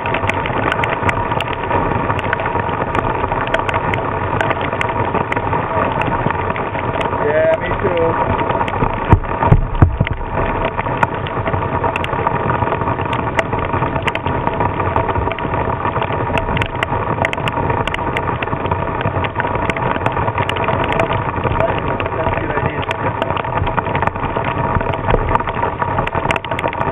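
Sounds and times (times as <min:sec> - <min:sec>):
heavy rain: 0:00.0 - 0:26.9
wind buffeting microphone: 0:00.0 - 0:26.9
loud knocks: 0:09.1 - 0:10.3.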